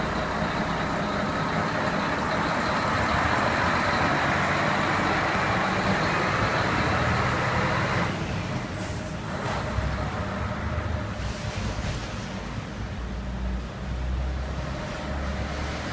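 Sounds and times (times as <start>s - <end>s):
diesel truck engine running: 0.0s - 11.8s.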